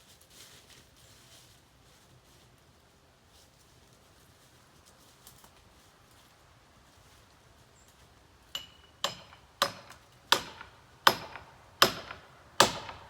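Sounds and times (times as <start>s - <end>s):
tool striking with metallic ring: 8.6s - 13.0s.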